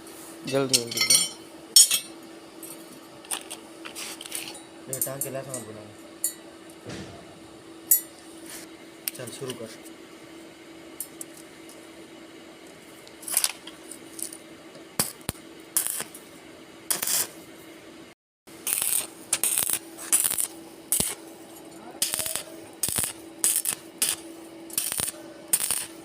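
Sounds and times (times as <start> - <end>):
steady hum: 0.0 - 26.0
welding crackling: 15.0 - 16.2, 16.9 - 17.4, 18.5 - 21.2, 22.0 - 26.0.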